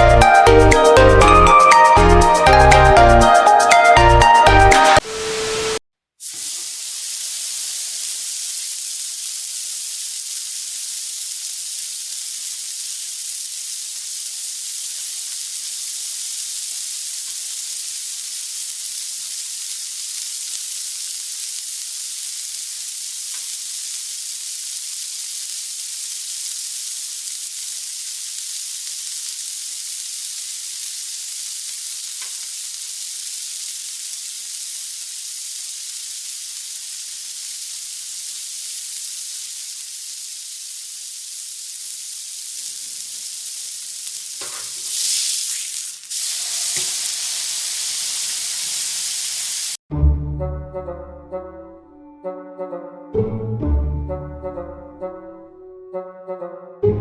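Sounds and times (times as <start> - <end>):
pork sizzling on a grill: 5.0 - 49.8.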